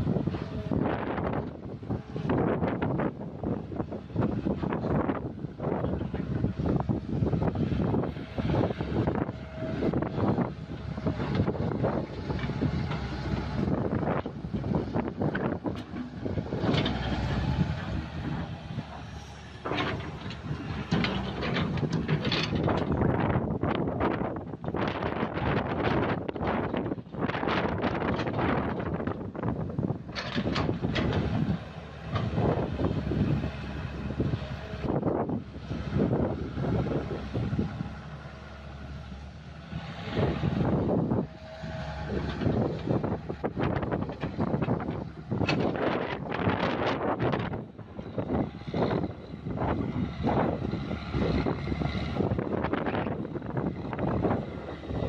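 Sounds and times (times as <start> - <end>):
excavator diesel engine running: 0.0 - 55.0
wind buffeting microphone: 0.0 - 55.0
metallic clanks and knocks: 19.6 - 23.1, 30.1 - 31.4.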